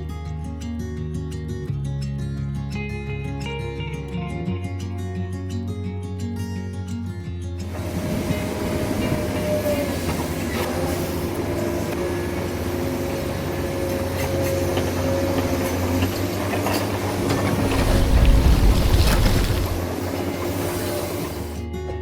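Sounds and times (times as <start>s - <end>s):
model truck motor whine: 7.8s - 20.3s
low rumble: 17.6s - 19.9s.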